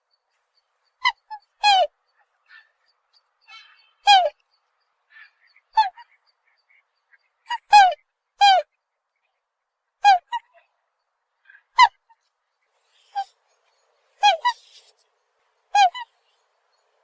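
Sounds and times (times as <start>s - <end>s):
swan honking calls: 1.0s - 4.4s, 5.1s - 8.7s, 14.2s - 15.0s, 15.7s - 16.4s.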